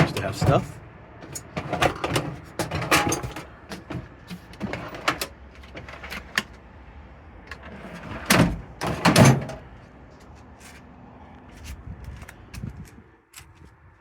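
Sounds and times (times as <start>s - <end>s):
sliding knocks in tool box: 0.0s - 5.2s
tool box clicks and clinks: 0.0s - 6.6s.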